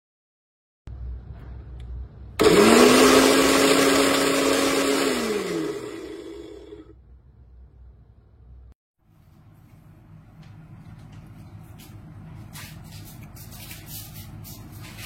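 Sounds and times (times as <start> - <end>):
small electric motor whirring: 2.4 - 6.9.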